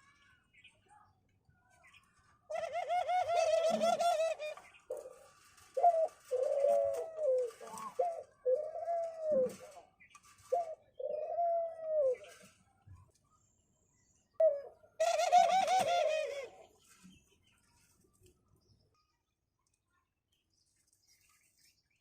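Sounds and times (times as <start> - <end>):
doves cooing: 2.5 - 12.6, 14.4 - 16.7.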